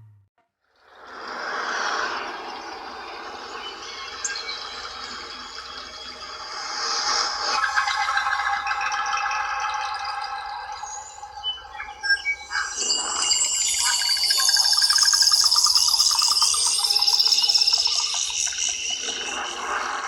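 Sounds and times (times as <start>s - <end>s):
high fast-repeating trills: 6.2s - 20.0s.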